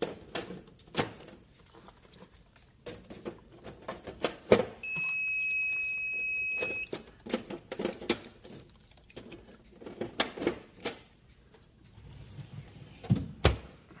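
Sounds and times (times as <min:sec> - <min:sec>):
high electronic beep: 0:04.8 - 0:07.0.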